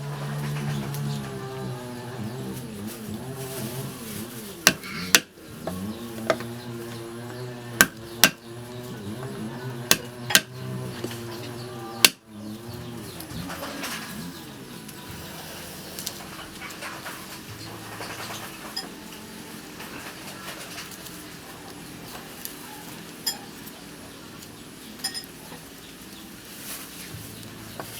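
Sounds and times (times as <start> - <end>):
knife striking chopping board: 4.7 - 5.3, 7.8 - 8.4, 9.9 - 10.5.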